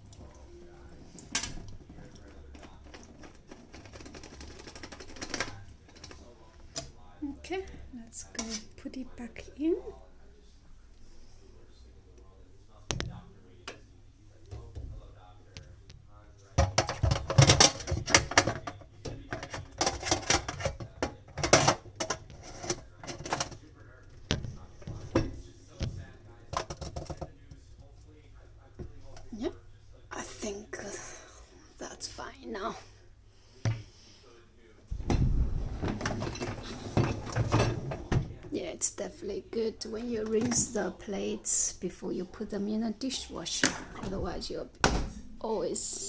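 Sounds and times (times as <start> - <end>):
hard plastic clattering and knocking: 1.2 - 6.9, 16.6 - 27.9, 35.0 - 38.5.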